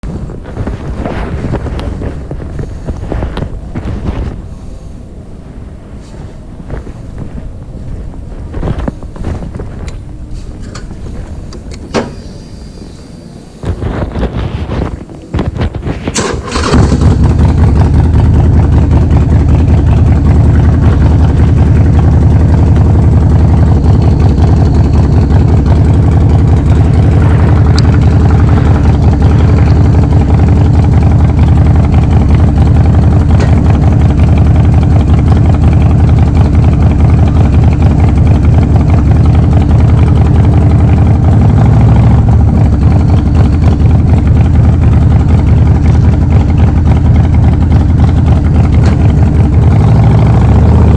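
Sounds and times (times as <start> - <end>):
motorcycle engine idling: 15.5 - 50.9.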